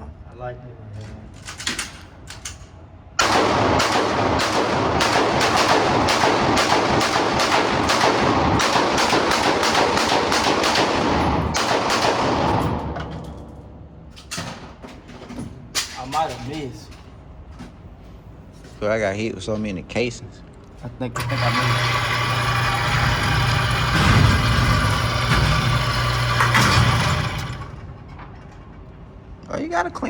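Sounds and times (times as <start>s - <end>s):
gunshot echo: 3.2s - 13.0s
semi-automatic gunshots: 3.2s - 13.0s.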